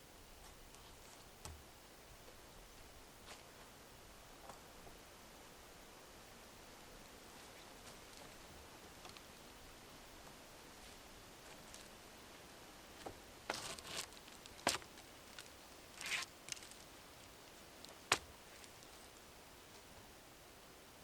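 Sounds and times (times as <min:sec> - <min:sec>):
rustling and crackling branches: 0:07.2 - 0:20.1.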